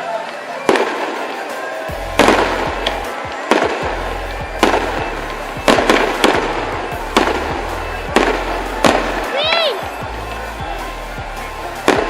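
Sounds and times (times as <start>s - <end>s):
fireworks bursting with sharp bangs: 0.0s - 10.9s, 11.5s - 12.0s
bass hum from party music: 1.9s - 3.1s, 3.8s - 12.0s.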